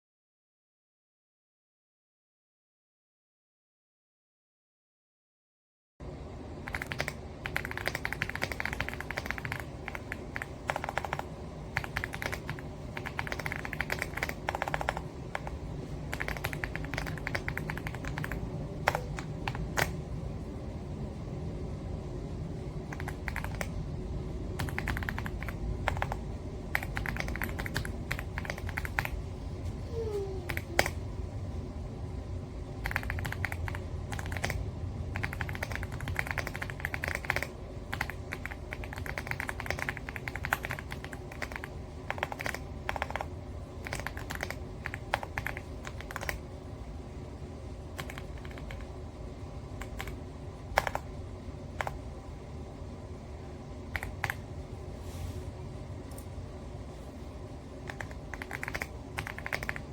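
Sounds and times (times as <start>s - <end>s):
steady low hum: 6.0s - 59.9s
mechanical keyboard typing: 6.6s - 20.0s, 22.9s - 23.8s, 24.6s - 29.2s, 32.8s - 46.4s, 48.0s - 49.0s, 49.8s - 51.1s, 51.7s - 52.0s, 53.9s - 54.4s, 57.8s - 59.9s.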